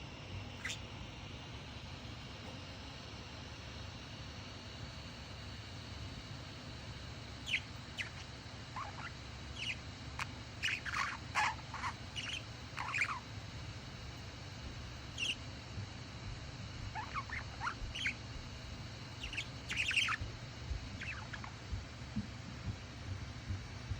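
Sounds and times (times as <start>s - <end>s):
low steady hum: 0.0s - 23.9s
budgie chirping and squeaking: 0.5s - 0.9s, 7.3s - 21.8s.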